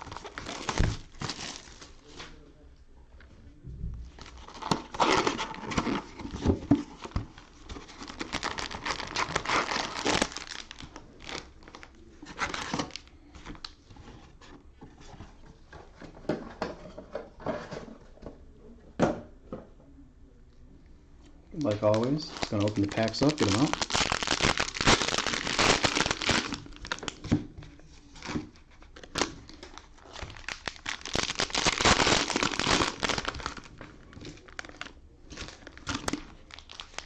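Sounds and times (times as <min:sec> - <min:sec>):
cellophane crinkling and tearing: 0:00.0 - 0:02.4, 0:04.2 - 0:13.8, 0:21.5 - 0:37.0.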